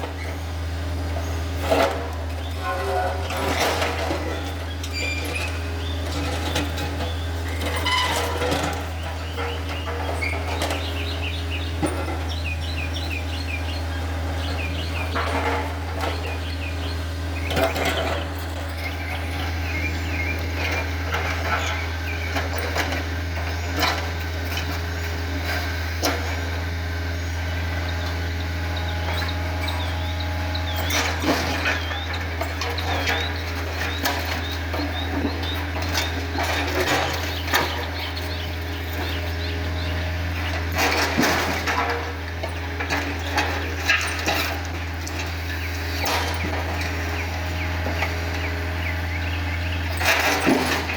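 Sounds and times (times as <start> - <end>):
excavator diesel engine running: 0.0 - 50.9.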